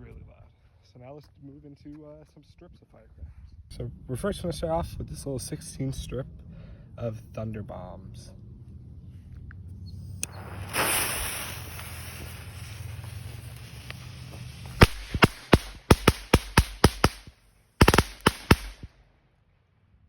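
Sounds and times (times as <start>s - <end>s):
firecracker fuse hiss: 10.2s - 17.2s
firecrackers banging: 10.2s - 18.9s.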